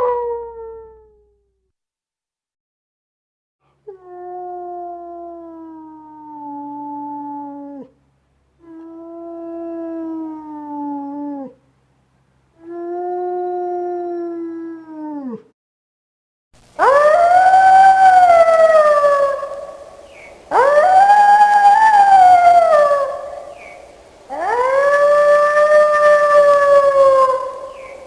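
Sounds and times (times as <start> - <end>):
wolf howling: 16.8 - 23.7, 24.3 - 28.0.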